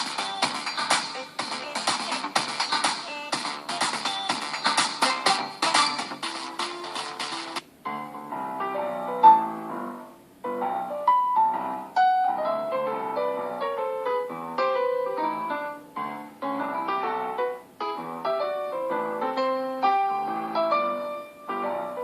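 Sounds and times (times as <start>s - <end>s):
electronic ringtone: 0.0s - 2.3s, 3.0s - 7.5s
piano-like ringtone melody: 0.0s - 22.0s.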